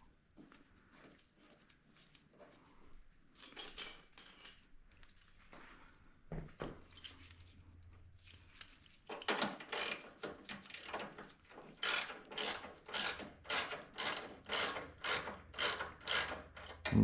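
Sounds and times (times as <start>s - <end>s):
ratchet wrench clicking: 9.6s - 11.1s, 11.8s - 16.9s.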